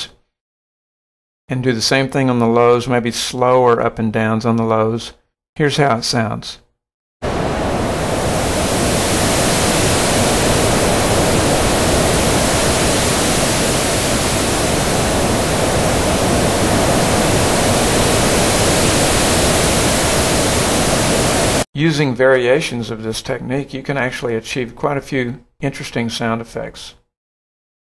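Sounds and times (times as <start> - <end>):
synthesized ocean surf hiss: 7.2 - 21.7.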